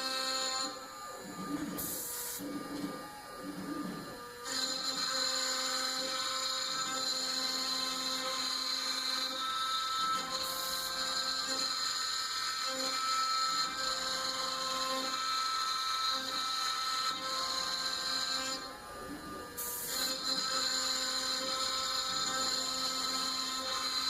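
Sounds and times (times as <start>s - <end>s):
low motor tones: 0.0s - 24.0s
router spindle high-pitched whine: 0.0s - 24.0s.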